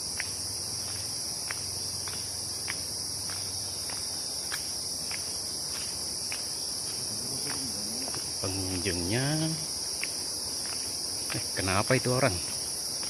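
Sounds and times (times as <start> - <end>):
insects chorus: 0.0 - 13.0.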